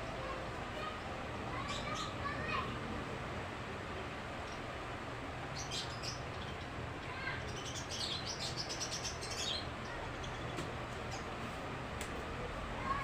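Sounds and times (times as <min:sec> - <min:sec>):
small birds chirping: 0:00.8 - 0:02.7, 0:05.4 - 0:11.5.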